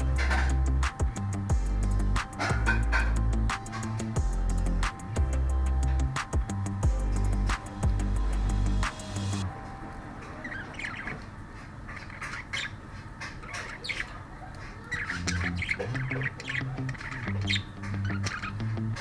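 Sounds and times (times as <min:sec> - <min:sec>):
low background music: 0:00.0 - 0:11.2, 0:15.2 - 0:19.0
pet birds squawking and chirping: 0:00.0 - 0:19.0.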